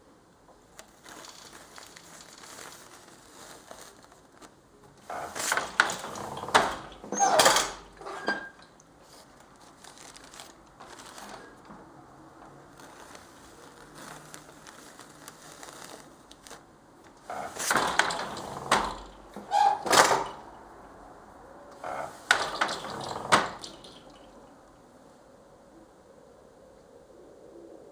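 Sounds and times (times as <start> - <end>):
papery rustling: 0.7 - 20.8
handloom knocking: 5.0 - 8.8, 17.3 - 20.5, 21.8 - 24.2.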